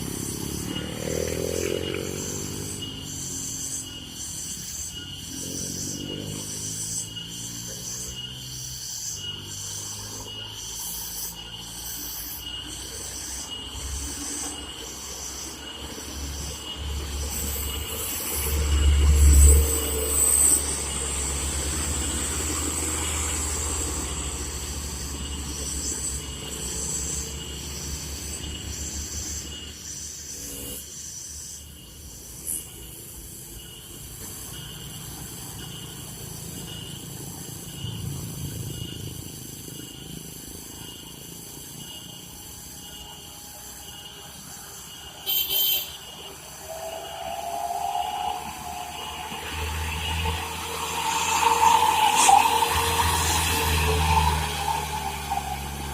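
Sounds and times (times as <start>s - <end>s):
engine rising in pitch: 0.0s - 30.9s, 46.0s - 55.9s
road background noise: 0.0s - 55.9s.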